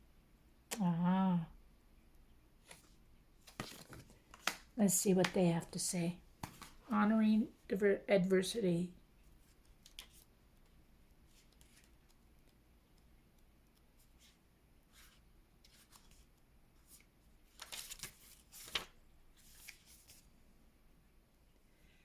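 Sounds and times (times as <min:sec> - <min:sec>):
paper rustling: 0:02.6 - 0:04.7, 0:14.0 - 0:20.3.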